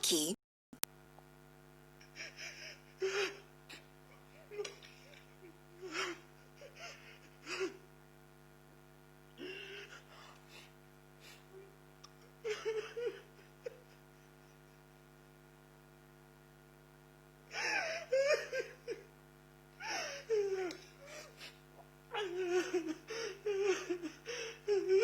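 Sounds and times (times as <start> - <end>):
high-pitched voice: 0.0 - 0.4
low electrical hum: 0.0 - 25.0.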